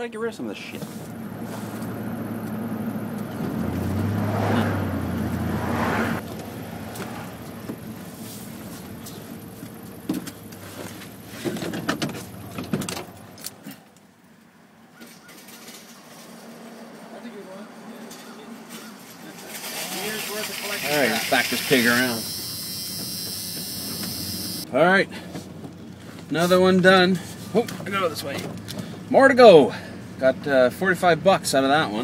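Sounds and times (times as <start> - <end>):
pickup engine revving: 1.0 - 11.5.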